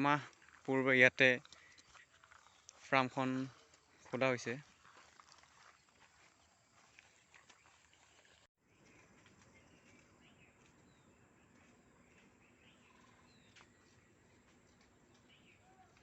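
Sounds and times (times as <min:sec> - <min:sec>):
faint bird-like chirps: 0:07.5 - 0:16.0.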